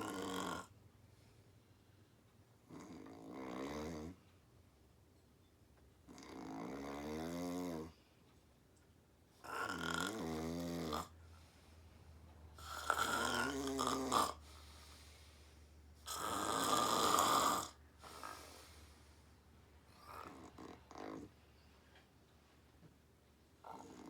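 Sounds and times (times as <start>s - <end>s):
deep buzzing snores: 0.0s - 0.7s, 2.7s - 4.2s, 6.1s - 8.0s, 9.4s - 11.2s, 12.6s - 14.6s, 16.0s - 18.6s, 19.9s - 21.3s.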